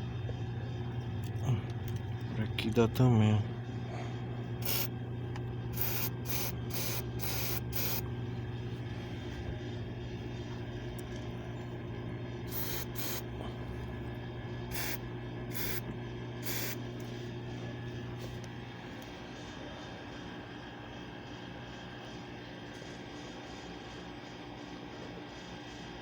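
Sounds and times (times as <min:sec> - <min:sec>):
steady low hum: 0:00.0 - 0:25.4
aerosol can hissing squirts: 0:04.6 - 0:04.9, 0:05.8 - 0:08.0, 0:12.5 - 0:13.2, 0:14.7 - 0:15.8, 0:16.4 - 0:16.8.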